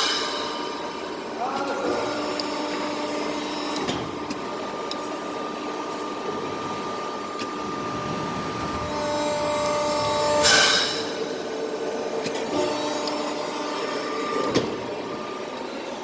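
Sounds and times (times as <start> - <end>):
hydraulic press hum: 0.0 - 15.7
loud high whine: 4.4 - 14.2.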